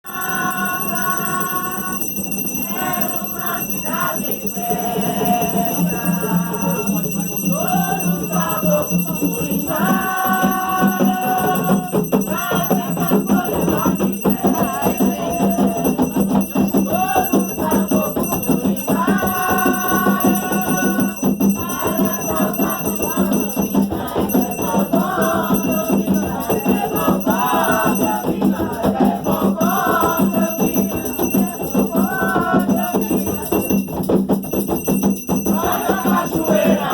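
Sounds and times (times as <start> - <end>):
rattles shaken rhythmically: 0.1 - 36.9
group of voices chanting: 7.5 - 16.1, 16.7 - 33.5, 35.6 - 36.9.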